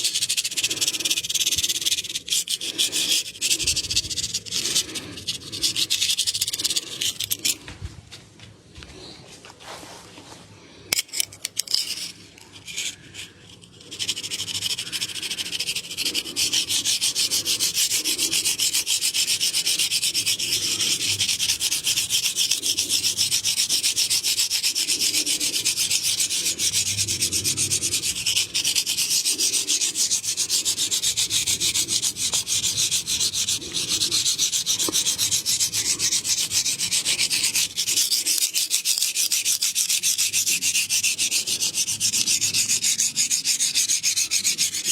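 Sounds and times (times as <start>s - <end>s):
hands rubbing over skin: 21.8s - 42.7s.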